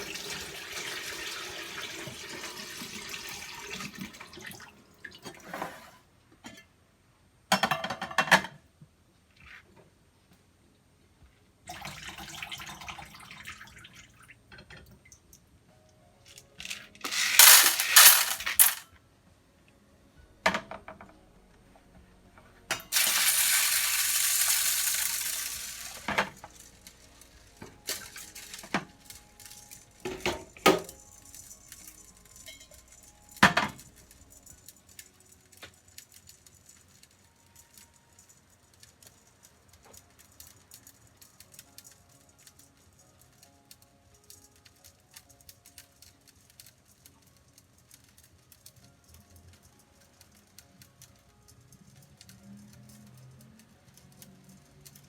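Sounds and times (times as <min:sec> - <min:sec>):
dishes clattering in a sink: 0:05.2 - 0:06.7, 0:07.5 - 0:08.6.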